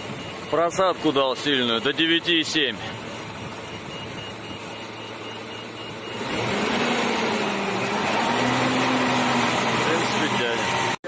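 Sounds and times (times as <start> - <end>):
rapid high-pitched beeping: 0.0 - 6.9
car engine idling and revving: 0.0 - 11.0.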